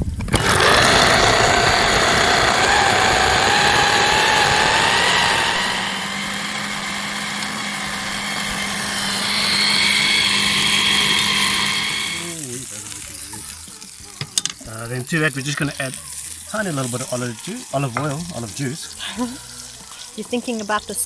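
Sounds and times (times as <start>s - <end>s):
blender motor whining: 0.0s - 13.8s.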